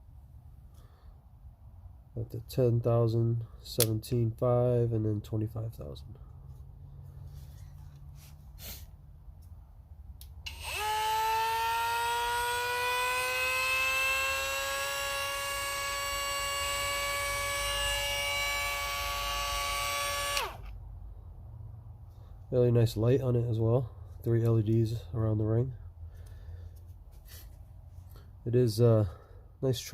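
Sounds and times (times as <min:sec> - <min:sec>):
die grinder high whine: 0:10.5 - 0:20.7.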